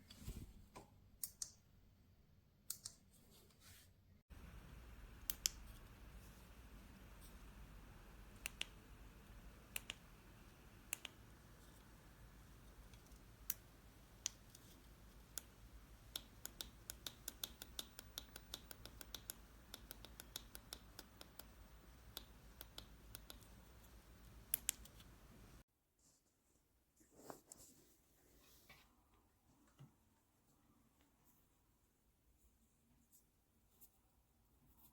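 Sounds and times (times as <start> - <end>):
quiet background hum: 0.0 - 34.9
small sharp clicks: 2.7 - 3.0, 5.2 - 5.9, 8.3 - 8.8, 9.7 - 10.1, 10.8 - 11.2, 12.9 - 25.2.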